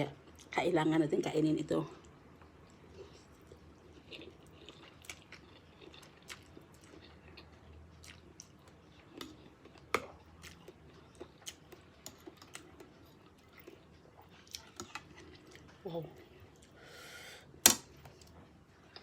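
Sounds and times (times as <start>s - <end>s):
person chewing and slurping noodles: 2.7s - 16.8s.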